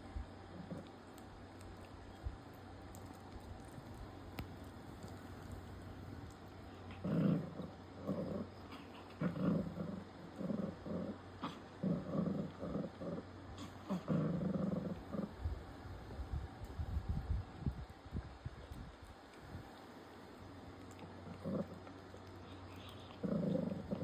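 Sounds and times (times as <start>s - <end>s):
dog growling: 0.5s - 1.0s, 6.8s - 15.5s, 21.0s - 24.0s.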